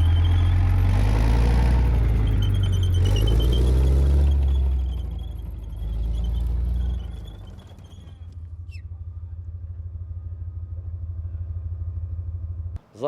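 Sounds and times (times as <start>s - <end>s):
high squeal falling in pitch: 0.0s - 1.2s, 1.9s - 8.9s
heavy vehicle engine rumbling: 0.0s - 12.8s.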